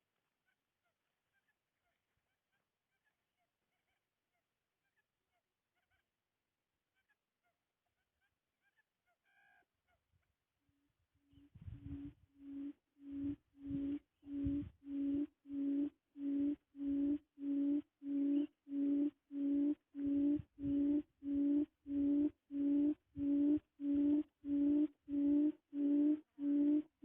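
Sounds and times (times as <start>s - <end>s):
quail hooting call: 11.8s - 27.0s.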